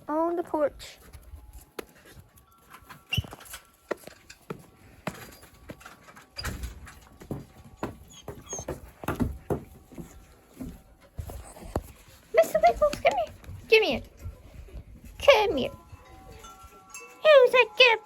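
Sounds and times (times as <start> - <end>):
dull thumps: 7.2 - 10.9.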